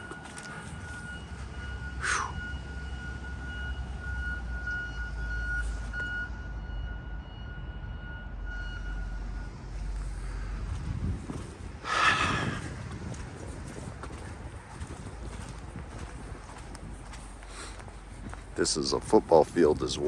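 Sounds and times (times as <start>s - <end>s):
wind rumbling on microphone: 9.4s - 20.0s.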